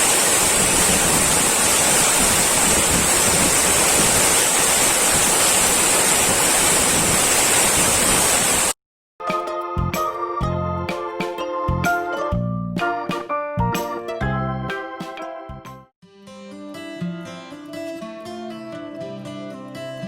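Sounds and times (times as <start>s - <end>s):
stream rushing over rocks: 0.0s - 8.8s.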